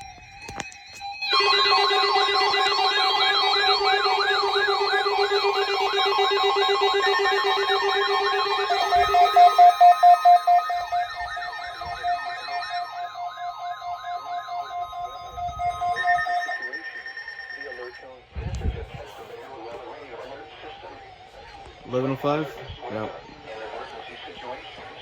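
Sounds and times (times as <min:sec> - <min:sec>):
loud pulsed beeps: 0:00.0 - 0:18.1
warbling siren: 0:00.0 - 0:18.2, 0:18.9 - 0:23.6
steady alarm tones: 0:00.0 - 0:18.3, 0:19.0 - 0:25.0.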